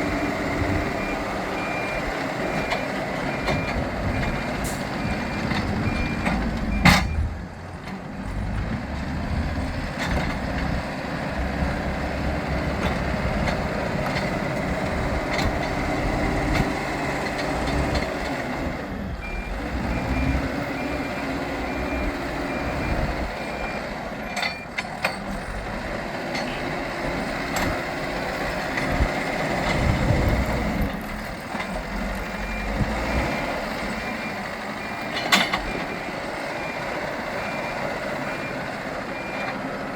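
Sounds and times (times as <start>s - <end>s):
reversing alarm beeping: 0.0s - 7.3s, 14.9s - 24.8s, 32.0s - 39.6s
diesel engine working under load: 0.0s - 39.9s.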